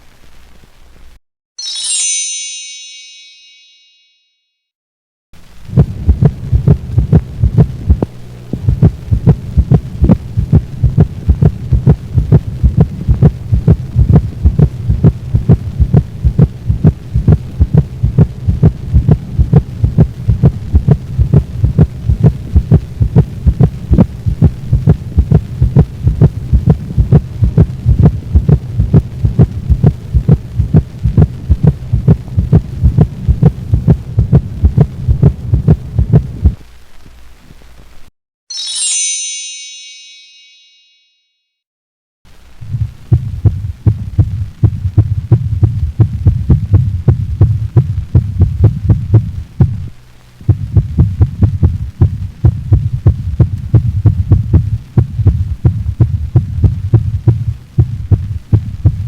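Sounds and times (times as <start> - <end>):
low hum: 5.4 - 36.8, 42.3 - 59.0
dog heartbeat through stethoscope: 5.7 - 36.6, 42.7 - 49.8, 50.5 - 59.0.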